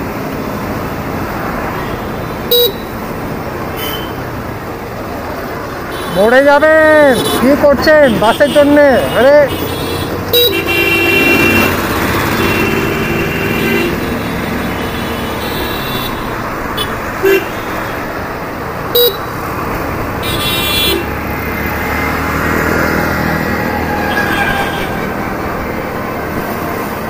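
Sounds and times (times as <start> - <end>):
road noise: 0.0 - 27.0
vehicle horns honking: 1.8 - 3.0, 3.7 - 4.3, 5.9 - 18.1, 18.9 - 19.3, 20.2 - 21.2, 23.6 - 25.4.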